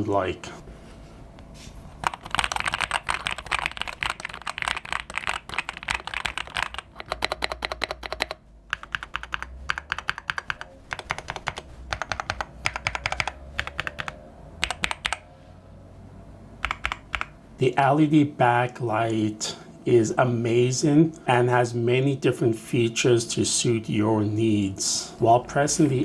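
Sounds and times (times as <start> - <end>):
mechanical keyboard typing: 2.0 - 15.2, 16.6 - 17.4.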